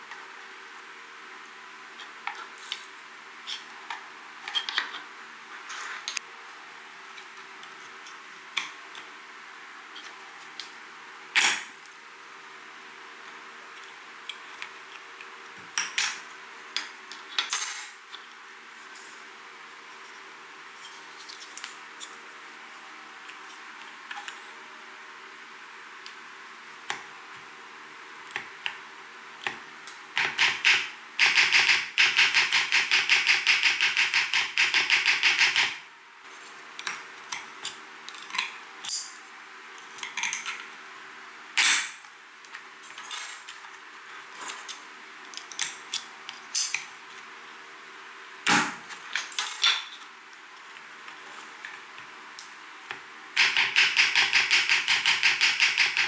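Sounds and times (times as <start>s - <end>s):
mechanical keyboard typing: 30.2s - 35.8s, 53.4s - 56.0s.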